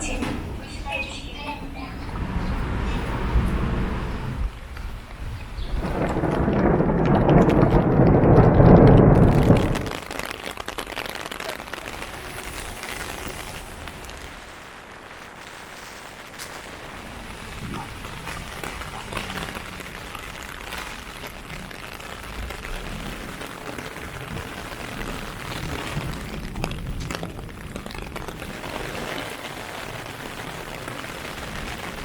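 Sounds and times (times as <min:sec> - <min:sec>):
heavy rain falling: 0:00.0 - 0:32.0
low rumble: 0:00.6 - 0:10.1.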